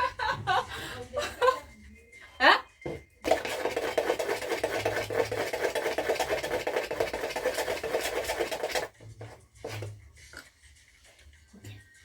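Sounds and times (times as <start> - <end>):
batter mixing clatter: 2.9 - 10.1.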